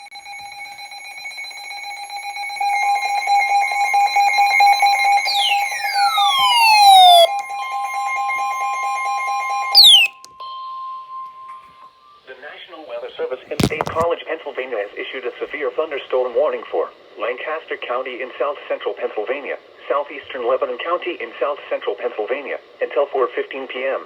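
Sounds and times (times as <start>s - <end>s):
steady electronic alarm tones: 4.9s - 7.8s, 9.8s - 10.2s
rapidly pulsing beep: 5.2s - 7.3s, 9.8s - 10.2s
falling tone sweep: 5.3s - 7.3s, 9.8s - 10.1s.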